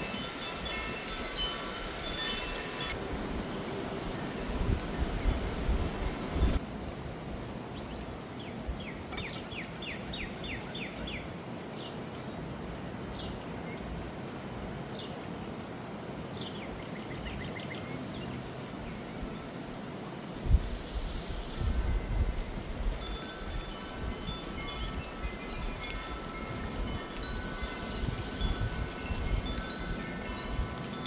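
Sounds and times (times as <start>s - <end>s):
wind noise: 0.0s - 11.1s, 18.7s - 31.0s
songbird chirping: 7.4s - 14.1s, 14.8s - 29.8s.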